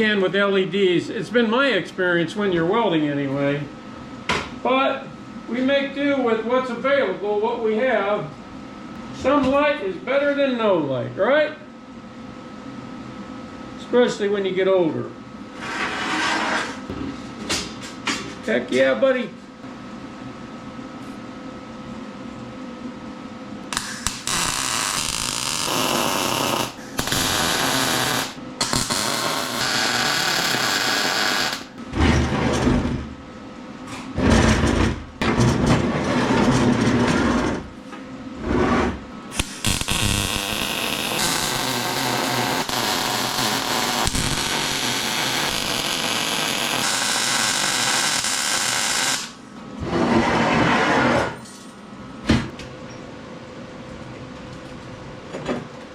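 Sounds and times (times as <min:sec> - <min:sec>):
welding arc crackling: 0:23.7 - 0:31.8, 0:39.4 - 0:49.4.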